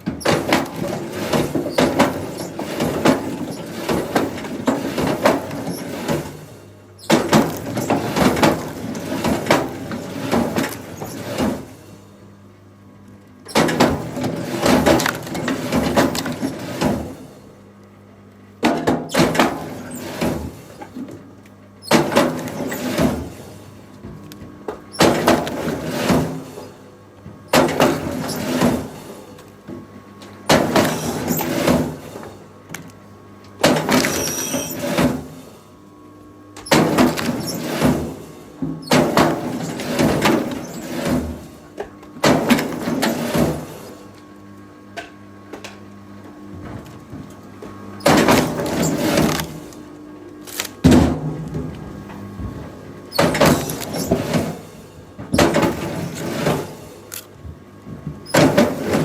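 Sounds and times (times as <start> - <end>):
machine noise: 0.0 - 12.1, 33.5 - 59.0.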